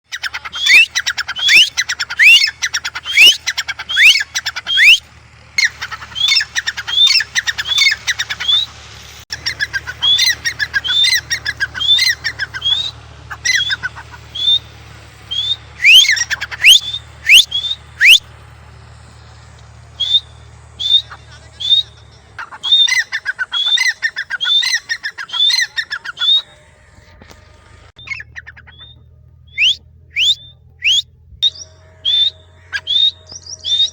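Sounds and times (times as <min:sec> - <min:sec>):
francolin calling: 0:00.1 - 0:33.9.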